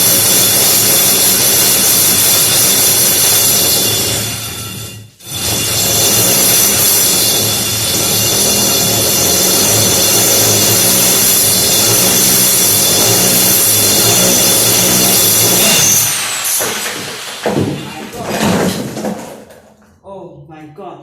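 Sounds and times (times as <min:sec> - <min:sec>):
drill boring through brick: 0:00.0 - 0:19.3.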